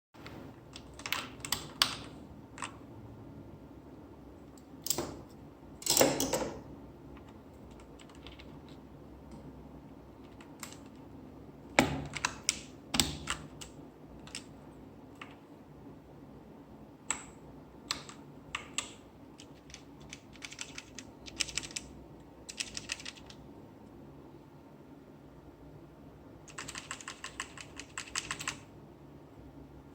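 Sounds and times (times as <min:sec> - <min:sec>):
keyboard keys clicking: 0:07.2 - 0:08.8, 0:11.8 - 0:14.5, 0:17.9 - 0:21.9, 0:22.5 - 0:23.4, 0:26.5 - 0:28.6.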